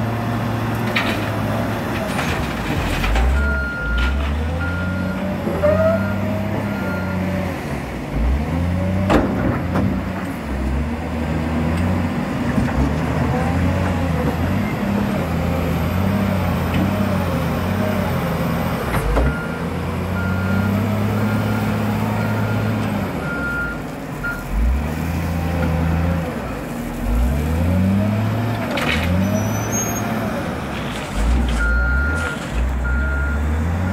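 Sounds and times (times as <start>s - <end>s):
diesel engine revving: 0.0s - 33.9s
reversing alarm beeping: 31.6s - 33.9s.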